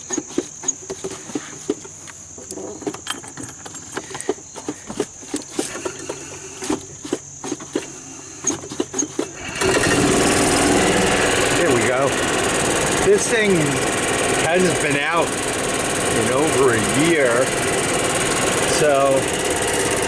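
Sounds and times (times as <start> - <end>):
crickets chirping: 0.0 - 9.7.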